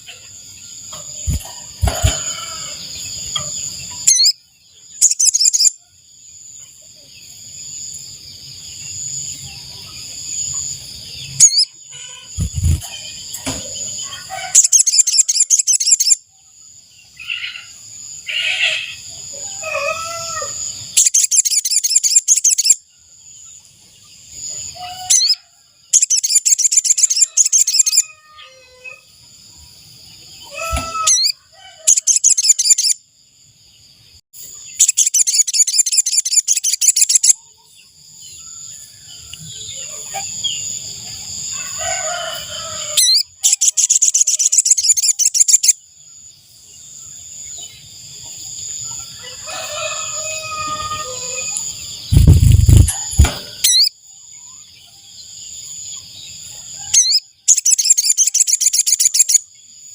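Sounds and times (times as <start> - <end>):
background bird calls: 0.0 - 59.9
bird high rattling trills: 34.8 - 37.3
loud low thump: 52.1 - 53.6.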